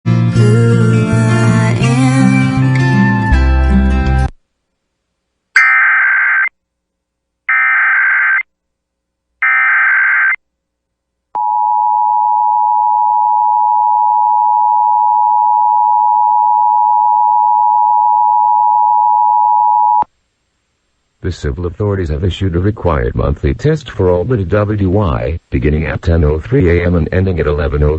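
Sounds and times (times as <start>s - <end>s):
warbling data tone bursts: 5.6s - 6.5s, 7.5s - 8.4s.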